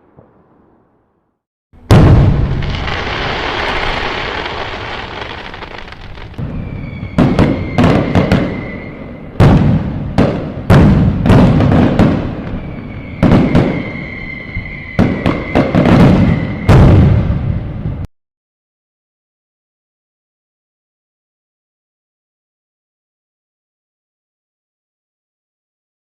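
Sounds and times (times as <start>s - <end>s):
fireworks bangs and crackles: 0.0s - 1.2s, 1.8s - 18.1s
fireworks rumble: 0.0s - 18.1s
high steady whistles: 2.8s - 9.4s, 12.2s - 17.7s.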